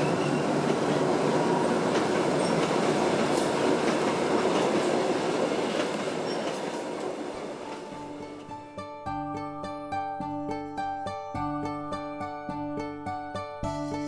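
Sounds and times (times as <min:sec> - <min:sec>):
train wheels rumbling on rails: 0:00.0 - 0:08.6.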